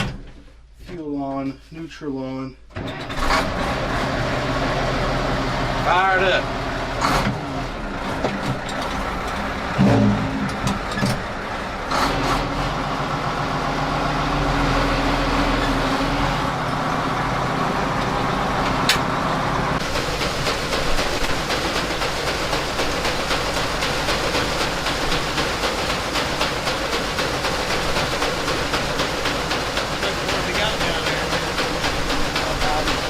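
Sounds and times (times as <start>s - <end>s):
tractor engine running: 3.1s - 33.0s
rattling clatter: 8.2s - 12.1s.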